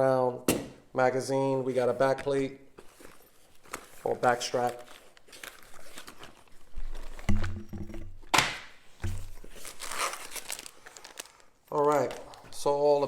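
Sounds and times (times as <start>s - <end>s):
bag rustling: 2.8s - 8.2s, 8.8s - 12.7s
items knocking: 7.1s - 9.6s.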